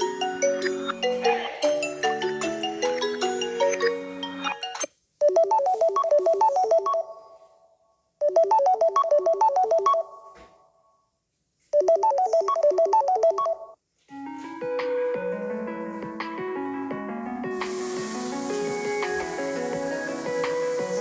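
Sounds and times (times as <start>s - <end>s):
phone ringtone bouncing notes: 0.0s - 7.2s, 8.2s - 10.3s, 11.8s - 13.8s
ringtone with low long notes: 0.0s - 7.5s, 8.2s - 10.4s.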